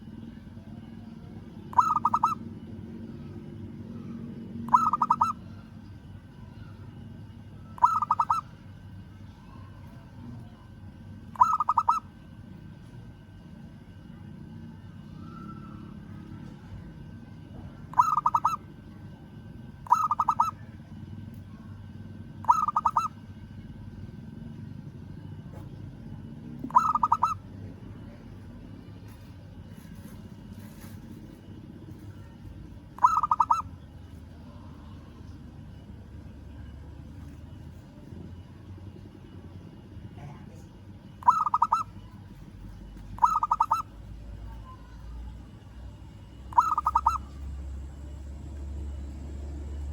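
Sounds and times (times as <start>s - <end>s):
dove cooing: 1.7s - 2.6s, 4.6s - 5.5s, 7.7s - 8.6s, 11.4s - 12.1s, 17.9s - 18.7s, 19.9s - 20.6s, 22.4s - 23.2s, 26.6s - 27.4s, 33.0s - 33.8s, 41.2s - 42.1s, 43.2s - 44.0s, 46.5s - 47.7s.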